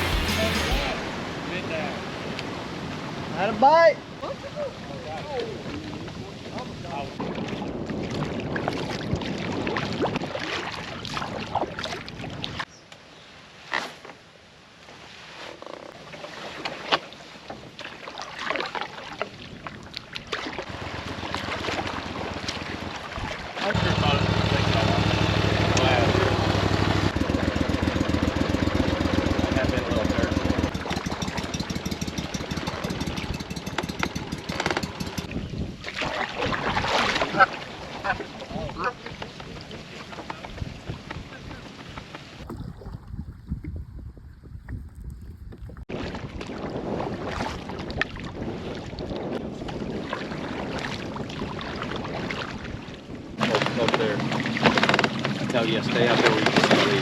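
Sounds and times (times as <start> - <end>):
small outboard motor running: 0.0 - 1.2, 20.7 - 23.0, 23.7 - 35.4, 53.4 - 57.0
loud splash or knock: 0.0 - 2.2, 42.4 - 43.9
paddling splashes and knocks: 7.2 - 12.6, 16.0 - 23.8, 30.7 - 38.4, 41.9 - 52.8, 53.4 - 57.0.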